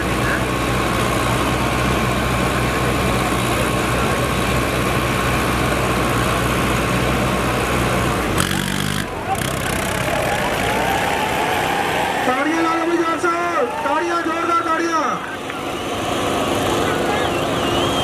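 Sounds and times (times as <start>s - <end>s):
diesel tractor engines running: 0.0s - 18.0s.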